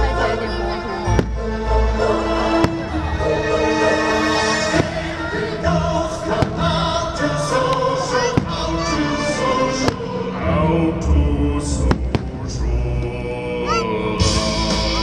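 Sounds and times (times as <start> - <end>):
music with choir-like singing: 0.0 - 15.0
sharp firework bangs: 9.8 - 10.2.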